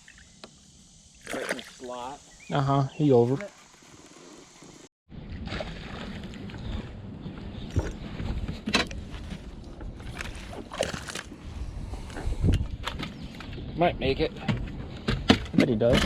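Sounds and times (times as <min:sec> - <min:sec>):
wind and water rumble: 0:05.1 - 0:16.0.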